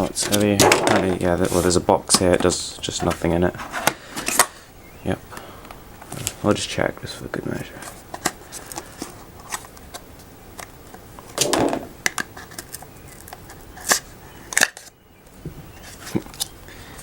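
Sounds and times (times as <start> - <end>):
cardboard rustle: 0.0 - 4.5.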